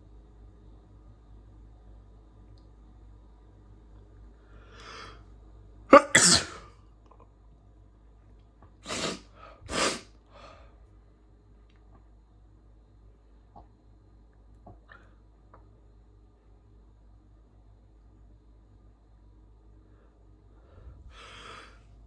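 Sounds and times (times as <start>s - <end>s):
soft in-breath: 4.4s - 5.3s, 8.9s - 10.8s, 19.8s - 21.9s
man sneezing: 5.9s - 6.7s, 8.8s - 10.1s.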